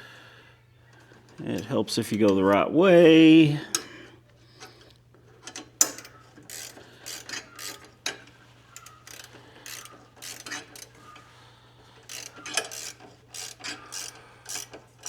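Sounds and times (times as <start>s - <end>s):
sharp metal clicks: 0.9s - 2.7s, 5.4s - 11.3s, 12.0s - 14.9s
ratcheting wrench clicking: 5.4s - 11.3s, 12.0s - 15.0s.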